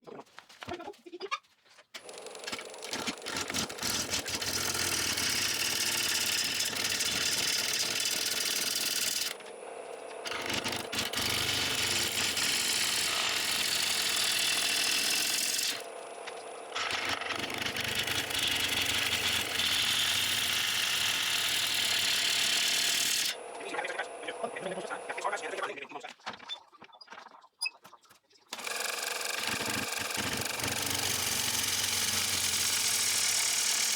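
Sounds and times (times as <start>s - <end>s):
gouge scraping wood on lathe: 2.2s - 9.5s, 10.2s - 23.4s, 28.6s - 33.9s.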